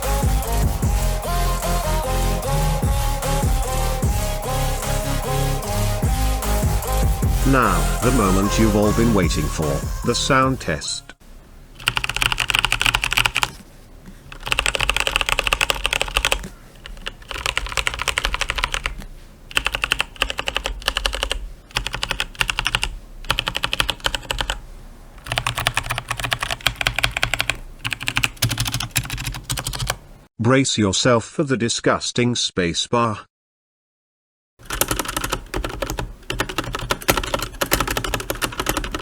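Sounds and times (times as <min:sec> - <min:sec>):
mechanical keyboard typing: 0:11.8 - 0:13.6, 0:14.3 - 0:24.6, 0:25.2 - 0:30.0, 0:34.6 - 0:39.0.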